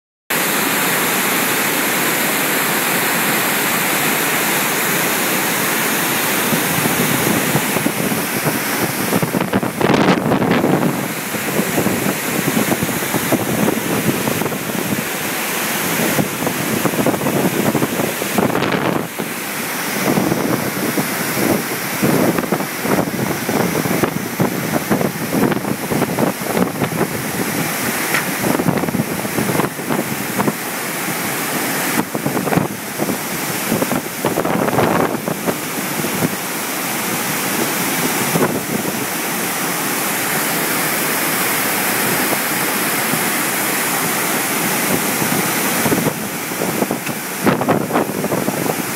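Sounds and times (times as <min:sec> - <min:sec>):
rushing river water: 0:00.3 - 0:48.9
gusting wind buffeting microphone: 0:06.2 - 0:36.5, 0:37.6 - 0:39.2, 0:44.6 - 0:48.9.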